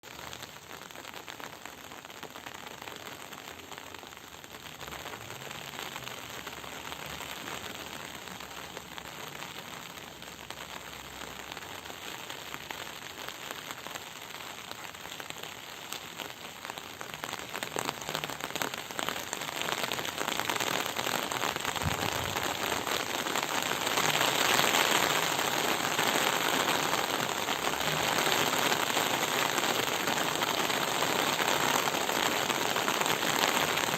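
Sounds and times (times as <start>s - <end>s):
rain falling: 0.0s - 33.9s.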